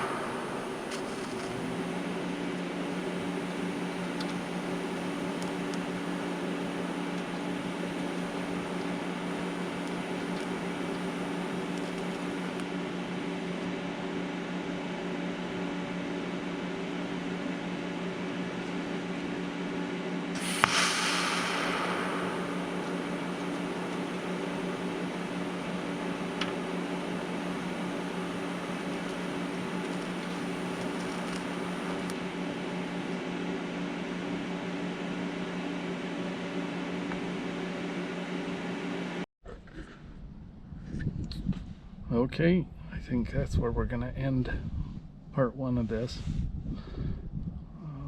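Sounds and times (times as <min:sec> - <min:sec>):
hiss: 0:00.0 - 0:12.6, 0:20.4 - 0:32.2
mechanical hum: 0:00.0 - 0:39.2
sharp click: 0:20.4 - 0:32.2.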